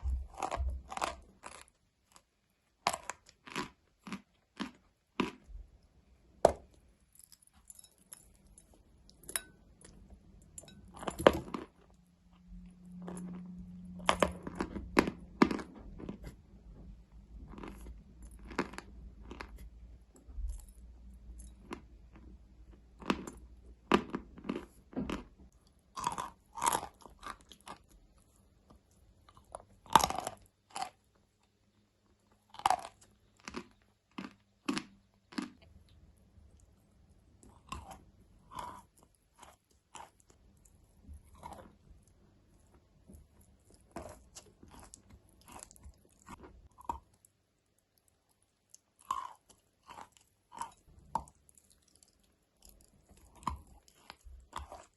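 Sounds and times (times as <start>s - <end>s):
crunchy chewing: 0.0s - 5.6s, 10.6s - 16.4s, 17.3s - 54.9s.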